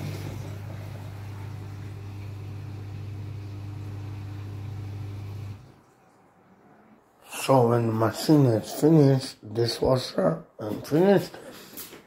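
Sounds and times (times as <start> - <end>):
dishwasher humming: 0.0 - 6.0.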